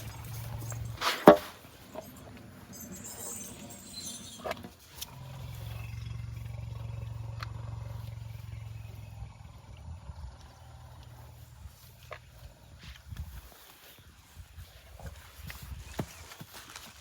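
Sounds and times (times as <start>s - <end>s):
low steady rumble: 0.0s - 1.0s, 1.6s - 13.4s
animal calling: 1.9s - 4.6s.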